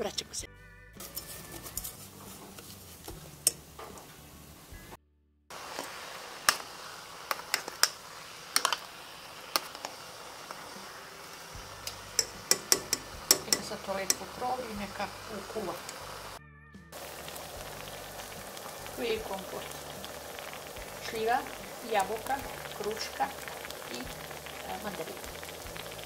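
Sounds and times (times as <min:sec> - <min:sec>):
background music: 0:00.0 - 0:05.0, 0:10.8 - 0:26.0
faint steady hiss: 0:03.0 - 0:16.4
metal utensil clicking on pot: 0:03.4 - 0:04.0, 0:07.3 - 0:08.9, 0:11.8 - 0:14.8.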